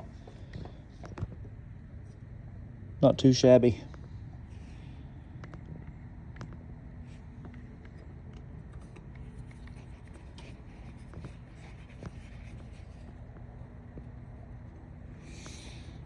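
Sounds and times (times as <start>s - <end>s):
steady low hum: 0.0s - 16.0s
light scratching and clicks: 5.4s - 14.8s.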